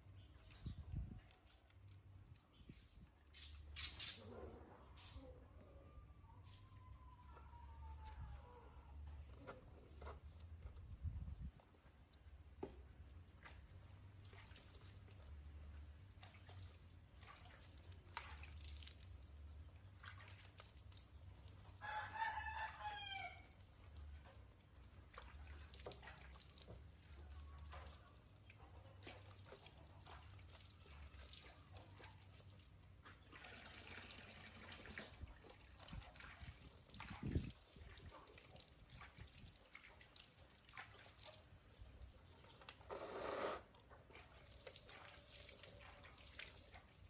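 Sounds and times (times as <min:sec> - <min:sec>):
faint drips and clicks: 0:00.2 - 0:03.9, 0:11.6 - 0:21.9, 0:23.2 - 0:33.4
rooster crowing: 0:21.8 - 0:23.5.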